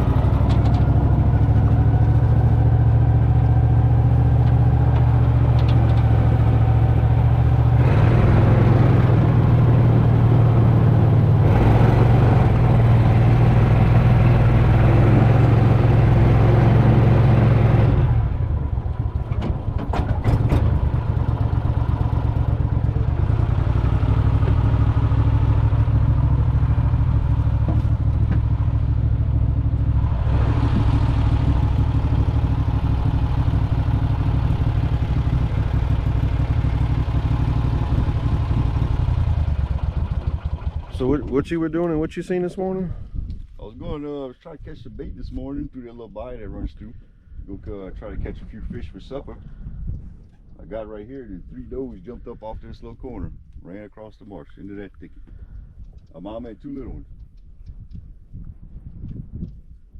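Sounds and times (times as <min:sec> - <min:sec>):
boat motor running: 0:00.0 - 0:41.4.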